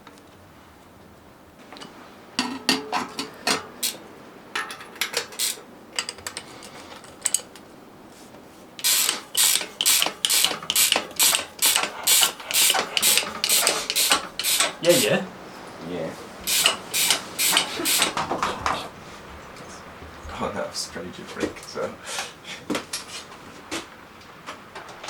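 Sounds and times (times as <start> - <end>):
metal parts rattling: 4.6 - 7.6, 8.8 - 15.1
ratchet clicking: 5.0 - 6.5, 8.8 - 15.1, 16.4 - 18.2.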